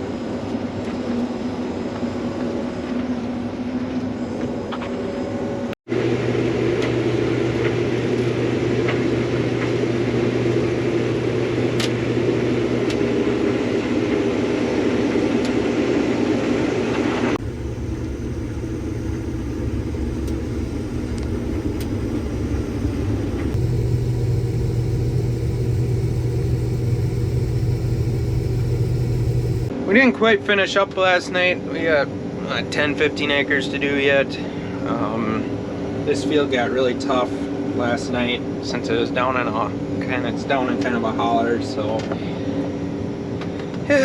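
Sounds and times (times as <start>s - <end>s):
harvest machinery engine noise: 17.4s - 29.7s
low hum: 17.4s - 29.7s.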